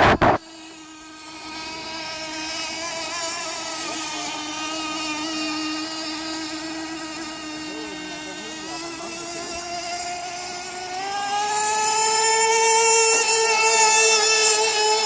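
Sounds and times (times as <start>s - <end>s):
small model engine running: 0.0s - 15.0s.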